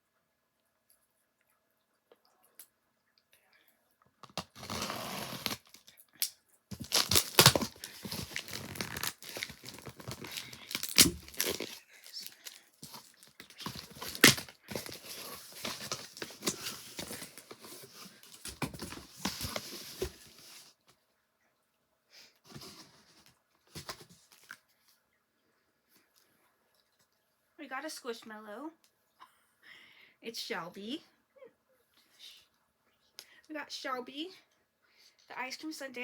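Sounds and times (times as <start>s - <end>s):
packaging tearing and crinkling: 4.2s - 5.9s, 6.7s - 20.3s.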